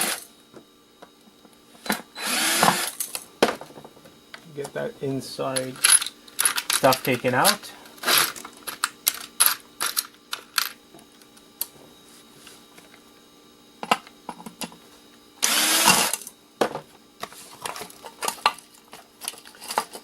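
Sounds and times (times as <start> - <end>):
small metal parts rattling: 5.6 - 10.8.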